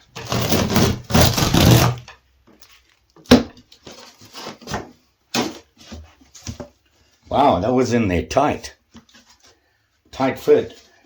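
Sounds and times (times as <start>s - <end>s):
rough scraping of wooden board: 0.0s - 2.1s.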